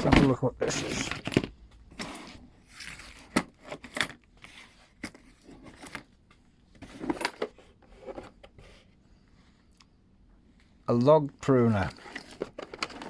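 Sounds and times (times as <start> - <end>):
clicks and knocks of handling: 12.0 - 13.0.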